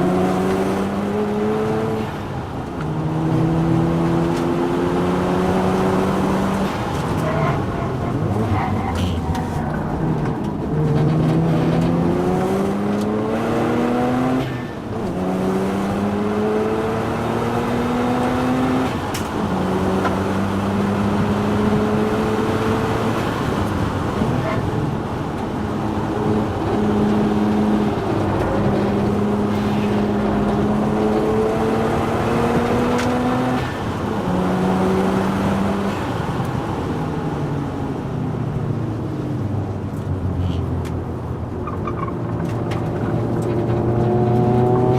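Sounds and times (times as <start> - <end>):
rotary engine revving through gears: 26.4 - 36.2.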